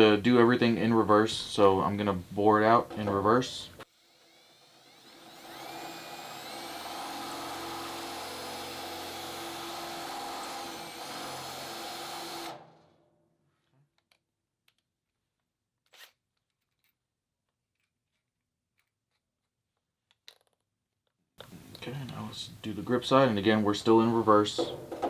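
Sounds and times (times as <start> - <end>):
power drill running: 3.9 - 12.6.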